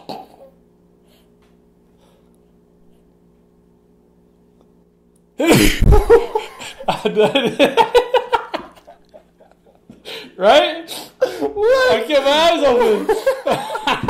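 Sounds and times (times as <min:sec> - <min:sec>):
man sneezing: 0:05.4 - 0:06.0
man laughing: 0:05.4 - 0:10.0, 0:11.2 - 0:14.0.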